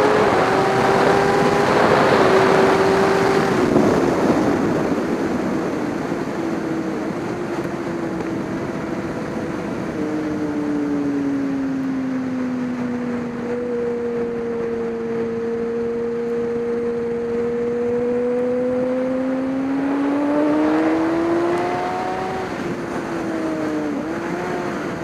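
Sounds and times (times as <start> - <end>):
racing motorcycle engine high revs: 0.0 - 5.2, 13.3 - 25.0
wind noise: 0.0 - 25.0.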